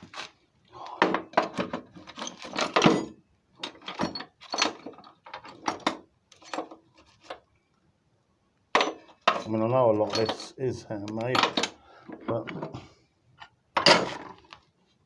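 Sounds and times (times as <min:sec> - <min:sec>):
metal parts knocking and clinking: 0:01.0 - 0:06.8, 0:08.8 - 0:12.7, 0:13.8 - 0:14.4.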